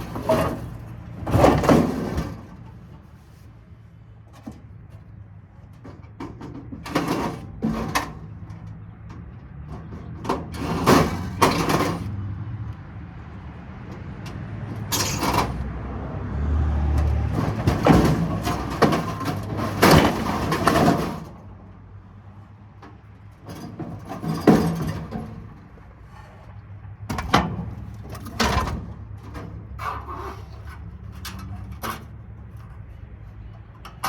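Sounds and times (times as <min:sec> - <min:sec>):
metal scraping: 0:00.0 - 0:03.5, 0:09.8 - 0:12.2, 0:14.8 - 0:15.6, 0:17.0 - 0:21.4, 0:23.3 - 0:34.0
scrap metal knocks and clanks: 0:00.0 - 0:12.3, 0:13.8 - 0:15.8, 0:16.8 - 0:21.6, 0:22.7 - 0:34.0.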